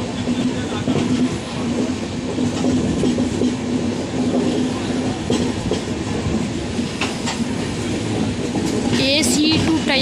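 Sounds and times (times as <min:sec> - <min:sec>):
train rumbling on rails: 0:00.0 - 0:10.0
wheel clacks over rail joints: 0:00.3 - 0:07.5.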